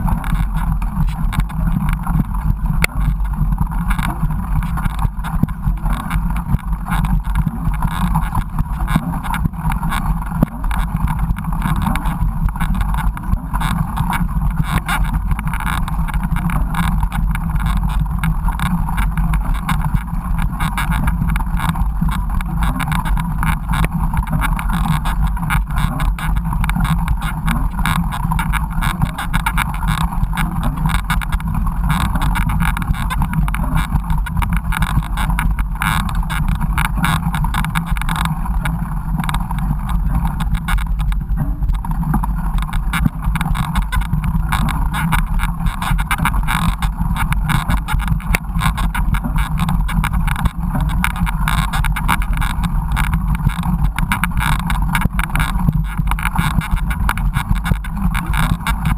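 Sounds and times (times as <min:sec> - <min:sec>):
bike rattling over rough trail: 0:00.0 - 0:58.9.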